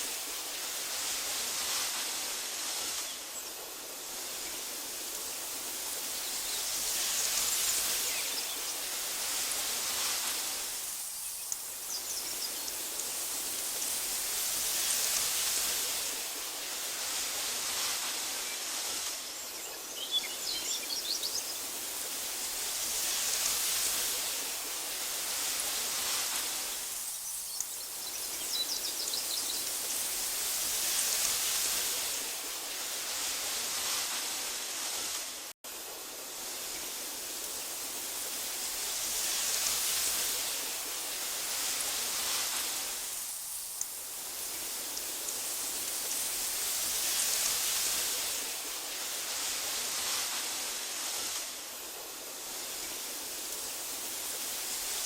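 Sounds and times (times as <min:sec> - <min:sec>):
wind blowing through grass: 0:00.0 - 0:55.0
faint bird chirps: 0:26.6 - 0:30.2.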